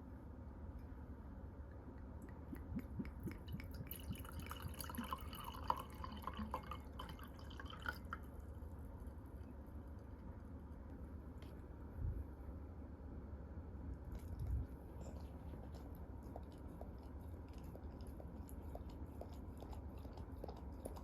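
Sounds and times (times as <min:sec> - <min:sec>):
steady low hum: 0:00.0 - 0:21.0
small wet clicks and drips: 0:01.7 - 0:10.6, 0:14.1 - 0:21.0.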